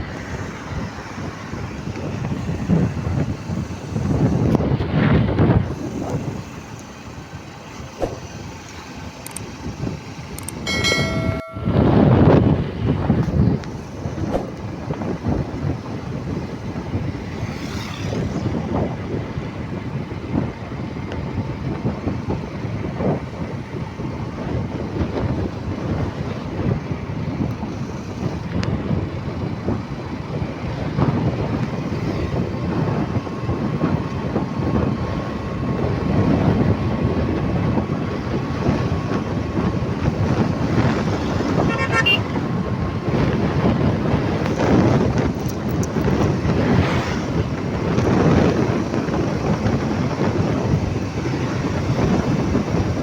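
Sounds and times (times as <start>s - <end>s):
highway traffic rumble: 0.0s - 53.0s
thin steady tone: 10.5s - 12.5s
vehicle horn toot: 41.6s - 42.4s.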